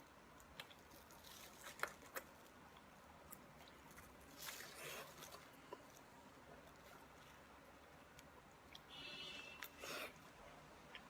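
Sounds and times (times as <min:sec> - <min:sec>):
person biting and chewing: 0:00.4 - 0:07.4.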